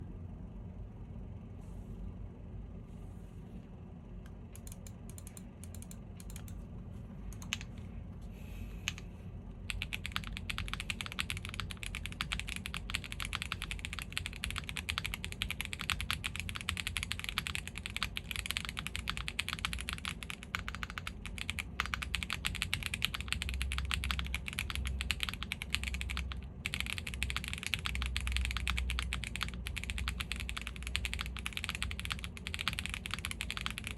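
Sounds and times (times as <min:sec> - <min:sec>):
typing on mechanical keyboard: 0:07.3 - 0:07.7, 0:09.7 - 0:33.9.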